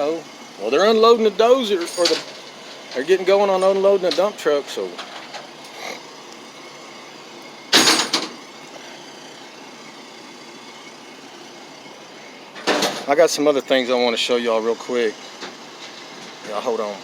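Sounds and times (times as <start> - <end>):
loud hiss or clank: 7.7 - 8.4.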